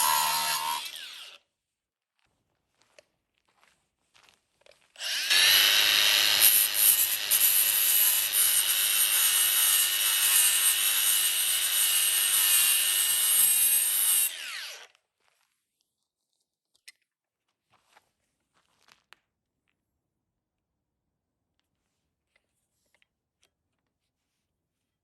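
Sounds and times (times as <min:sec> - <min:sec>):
angle grinder whining: 0:00.0 - 0:01.4, 0:05.0 - 0:14.9.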